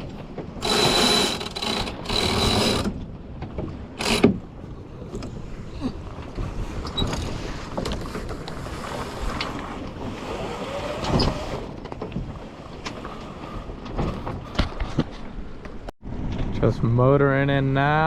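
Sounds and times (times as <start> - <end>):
boat knocks: 0.0 - 15.8
water splashing along hull: 0.0 - 15.9
wind buffeting microphone: 0.0 - 17.0.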